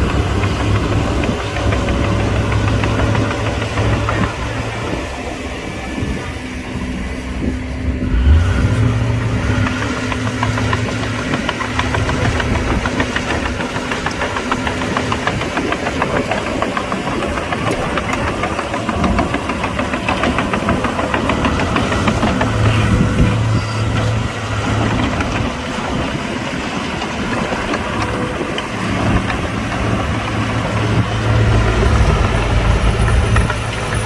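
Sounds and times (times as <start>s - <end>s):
heavy diesel machinery running: 0.0s - 34.0s
fast even clatter: 9.3s - 34.0s.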